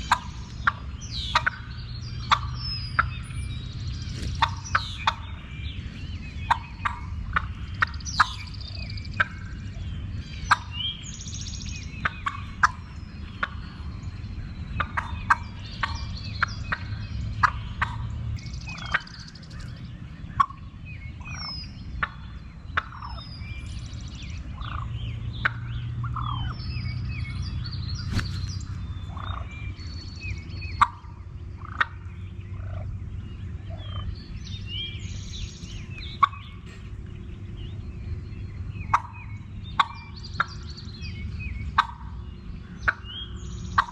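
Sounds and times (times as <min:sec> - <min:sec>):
turkey clucking and yelping: 0:00.0 - 0:03.1, 0:04.4 - 0:05.5, 0:06.5 - 0:08.6, 0:10.5 - 0:10.7, 0:12.0 - 0:12.8, 0:13.4 - 0:13.6, 0:20.4 - 0:20.6, 0:22.8 - 0:23.2, 0:30.8 - 0:32.0, 0:36.2 - 0:36.8, 0:38.9 - 0:39.2, 0:39.8 - 0:40.6, 0:41.8 - 0:42.2, 0:42.8 - 0:43.0
small birds chirping: 0:00.0 - 0:43.9.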